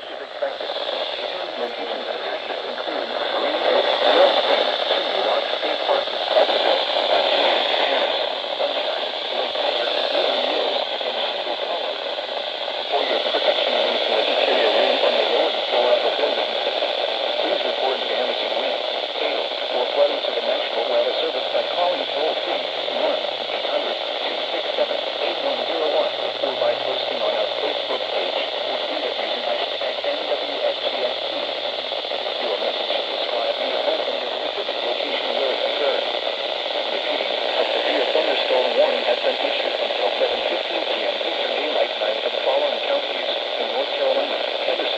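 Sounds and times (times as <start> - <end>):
radio static hiss: 0.0 - 44.9.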